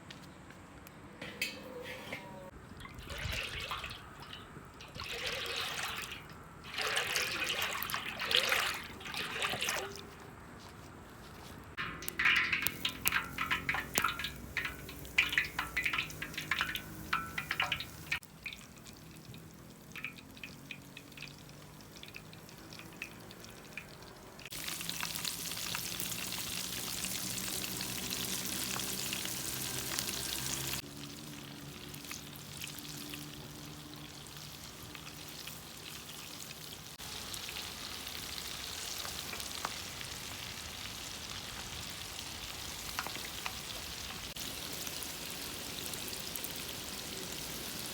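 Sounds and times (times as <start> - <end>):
food sizzling in hot oil: 11.8 - 47.9.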